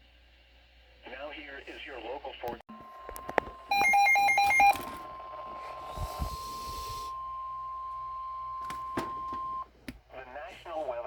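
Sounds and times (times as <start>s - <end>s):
steady electronic alarm tone: 2.7s - 9.7s.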